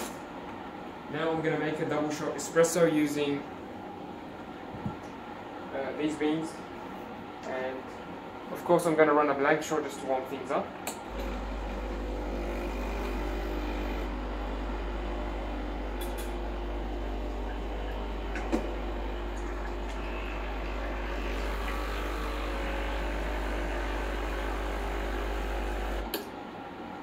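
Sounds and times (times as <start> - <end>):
espresso machine pump humming: 11.1 - 26.1.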